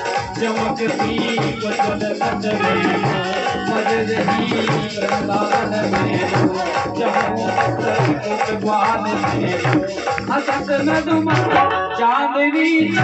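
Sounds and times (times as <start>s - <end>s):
steady percussion beat: 0.0s - 11.7s.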